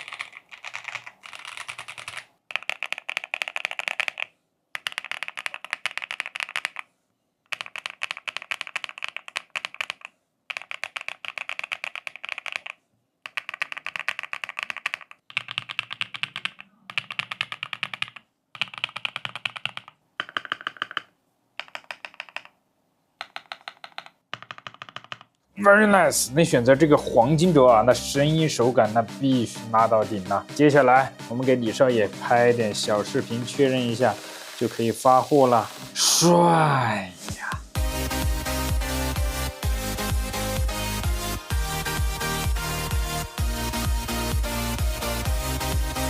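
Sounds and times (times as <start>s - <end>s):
mechanical keyboard typing: 0.0s - 6.9s, 7.5s - 22.6s, 23.2s - 25.4s.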